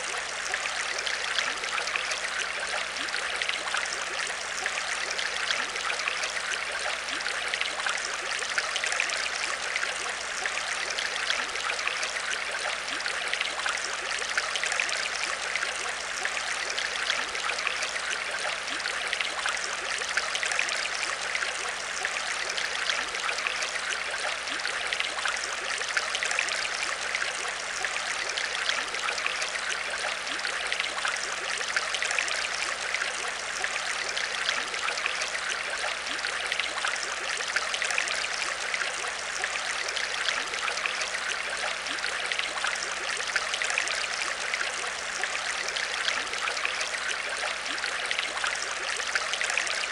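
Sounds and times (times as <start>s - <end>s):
aquarium water trickling and bubbling: 0.0s - 49.9s.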